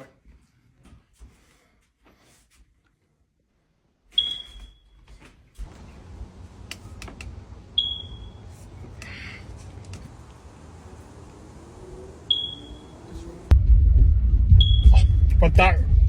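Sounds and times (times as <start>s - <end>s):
short high electronic beeps: 14.6s - 15.0s.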